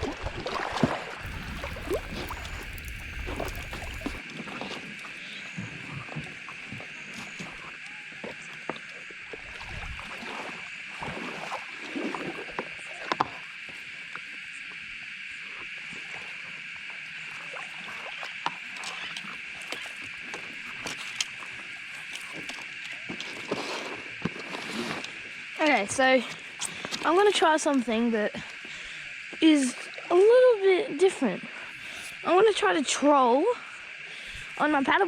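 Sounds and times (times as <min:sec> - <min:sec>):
paddle splashing water: 0:00.5 - 0:04.2
steady high-pitched hum: 0:01.2 - 0:04.2.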